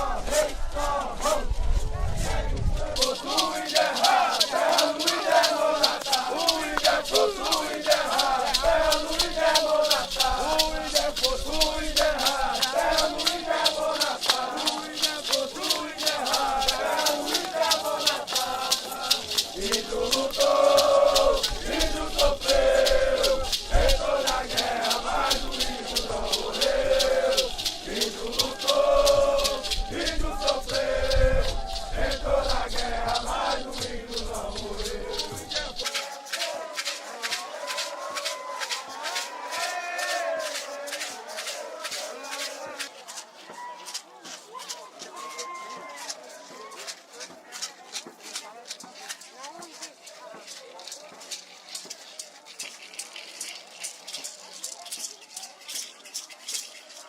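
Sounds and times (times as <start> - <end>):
group chanting and singing: 0.0 - 57.0
maracas shaking: 0.0 - 57.0.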